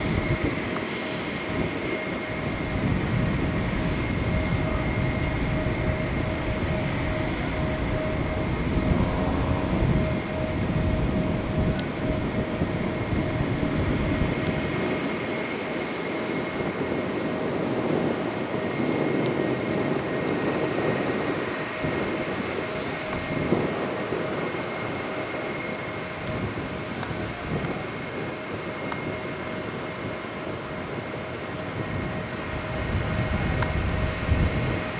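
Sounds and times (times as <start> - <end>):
jet engines whining: 0.0 - 34.9
deep engine rumble: 2.4 - 14.4.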